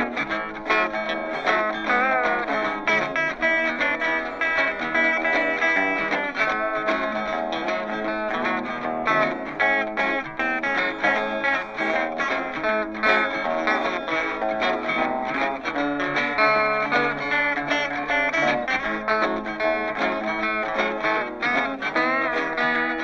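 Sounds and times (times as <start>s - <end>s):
guitar-led background music: 0.0s - 23.0s.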